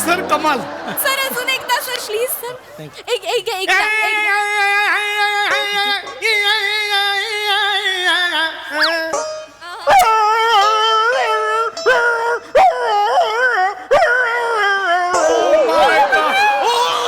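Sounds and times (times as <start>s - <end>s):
man imitating dog howling: 9.9s - 17.0s.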